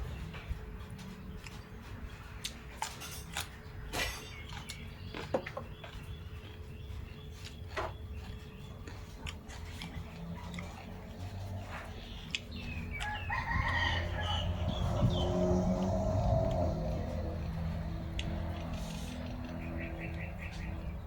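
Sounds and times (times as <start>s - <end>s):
rooster crowing: 12.9s - 14.8s.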